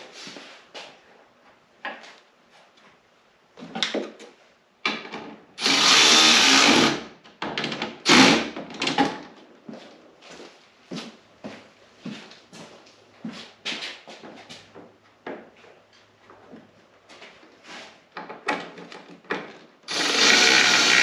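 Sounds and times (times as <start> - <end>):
knocks and clatter of tools: 3.6 - 5.4, 7.3 - 8.0, 8.6 - 9.5, 18.1 - 19.8
power drill running: 5.6 - 7.1, 8.0 - 8.6, 19.9 - 21.0.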